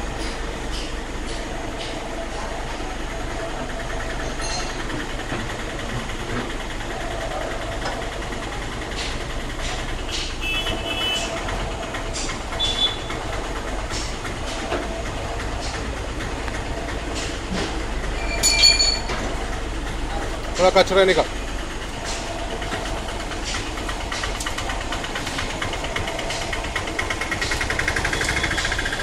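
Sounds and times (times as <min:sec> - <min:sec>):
butt fusion welding machine running: 0:00.0 - 0:29.0
short high squeaks: 0:18.2 - 0:19.1.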